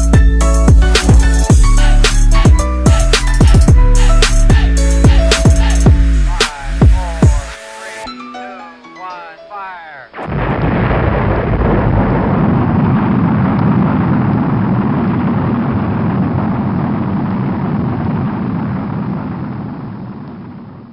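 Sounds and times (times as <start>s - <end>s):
loud steady rumbling: 10.2s - 20.9s.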